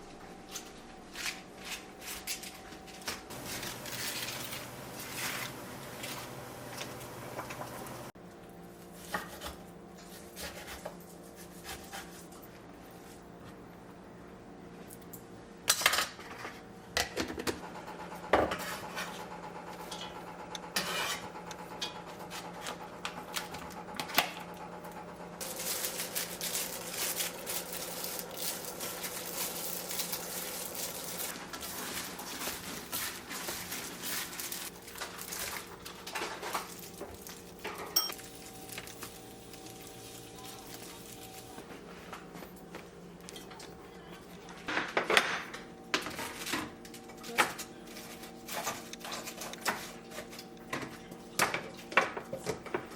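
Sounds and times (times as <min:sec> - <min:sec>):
utensils clinking against dishes: 0:19.8 - 0:22.8, 0:25.4 - 0:41.5.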